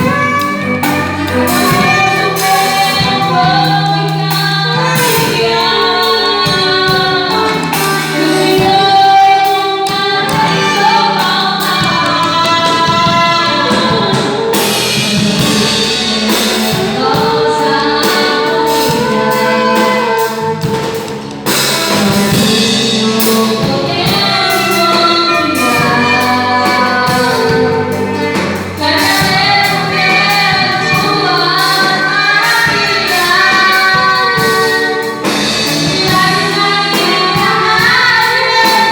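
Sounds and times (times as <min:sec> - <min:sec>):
live band playing: 0:00.0 - 0:38.9
singers carrying a melody: 0:00.0 - 0:38.9.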